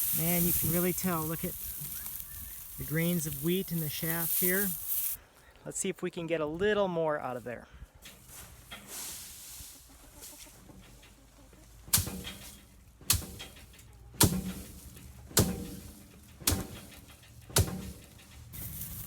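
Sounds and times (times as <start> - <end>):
threshing blows on wheat: 0.0 - 5.2, 14.2 - 17.0, 17.6 - 19.0.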